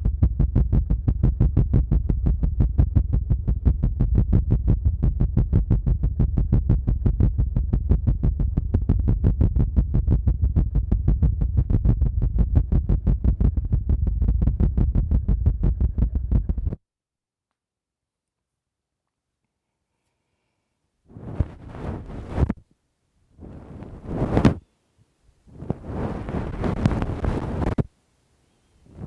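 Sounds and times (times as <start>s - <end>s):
hands pounding on microphone: 0.0s - 16.8s, 21.1s - 22.6s, 23.4s - 24.6s.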